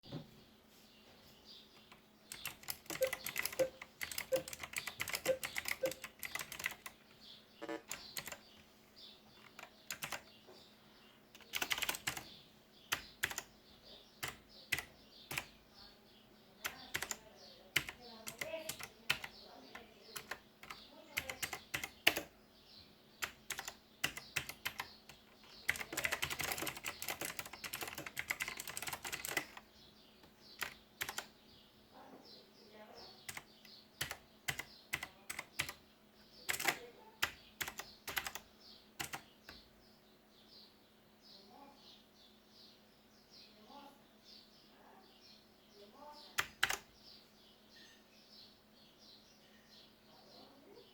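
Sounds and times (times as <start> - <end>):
mechanical keyboard typing: 1.8 - 7.0, 7.9 - 8.5, 9.4 - 10.2, 11.4 - 12.3, 12.9 - 13.5, 14.2 - 15.5, 16.6 - 19.3, 20.1 - 22.3, 23.2 - 29.6, 30.6 - 31.3, 33.2 - 35.8, 36.4 - 39.2, 46.4 - 46.9.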